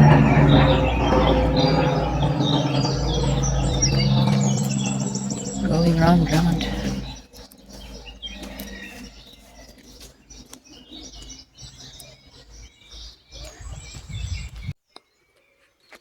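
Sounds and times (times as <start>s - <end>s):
low rumble: 0.0s - 7.2s
small birds chirping: 0.0s - 16.0s.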